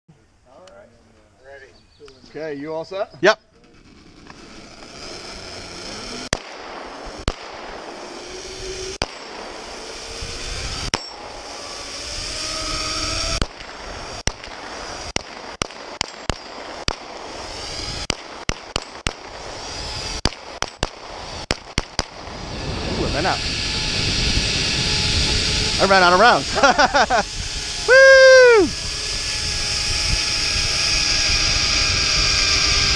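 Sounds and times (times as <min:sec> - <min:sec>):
zipline trolley rushing on cable: 0:03.6 - 0:15.2, 0:16.0 - 0:18.1, 0:19.0 - 0:32.9
gunshots: 0:05.8 - 0:09.8, 0:13.4 - 0:22.4.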